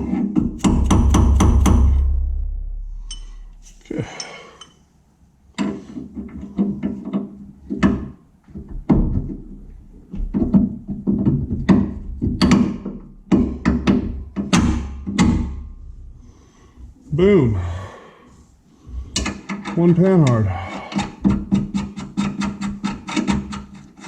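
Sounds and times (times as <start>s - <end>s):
sharp drum hits: 0.4s - 4.0s
held low notes: 0.4s - 4.2s.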